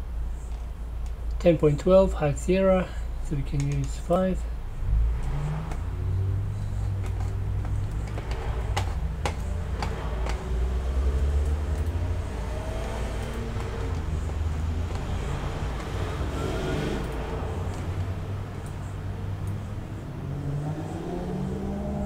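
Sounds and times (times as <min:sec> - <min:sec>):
sharp clicks: 0:03.5 - 0:04.0, 0:11.3 - 0:12.0, 0:12.8 - 0:15.1.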